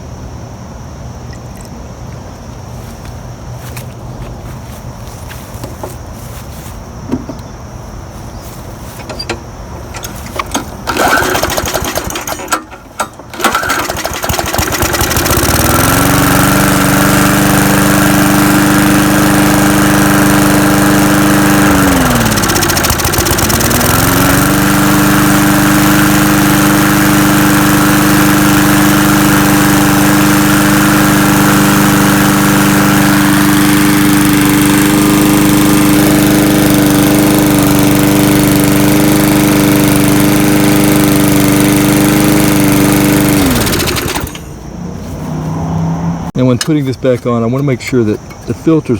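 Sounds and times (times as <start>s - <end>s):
lawn mower engine running: 3.6s - 48.9s
starter cord tugs: 9.0s - 17.2s, 18.0s - 44.6s, 46.4s - 48.9s.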